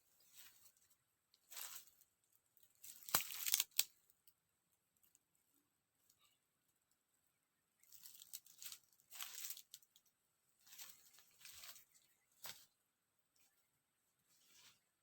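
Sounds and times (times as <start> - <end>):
faint rustling: 10.6 - 12.8.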